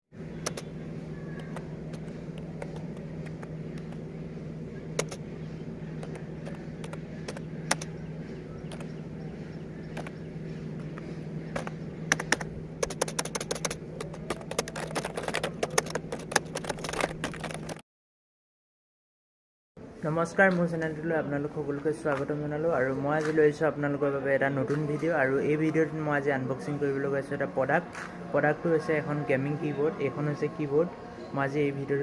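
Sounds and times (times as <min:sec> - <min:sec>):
steady low hum: 0:00.2 - 0:17.8, 0:19.8 - 0:32.0
typing on a keyboard: 0:00.4 - 0:00.7, 0:01.3 - 0:04.0, 0:06.0 - 0:07.9, 0:11.5 - 0:17.8.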